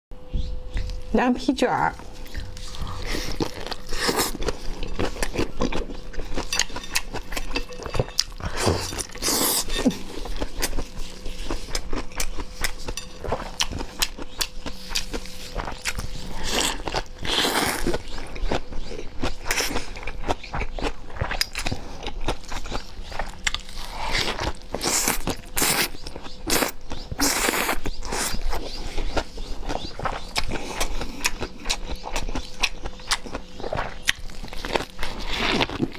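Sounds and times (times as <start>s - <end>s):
faint steady hum: 0.2s - 35.9s
person biting and chewing: 2.0s - 35.9s.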